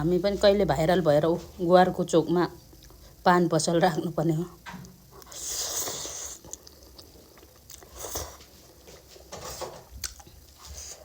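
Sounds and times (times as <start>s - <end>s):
person chewing noodles: 5.1s - 9.1s, 9.8s - 11.0s.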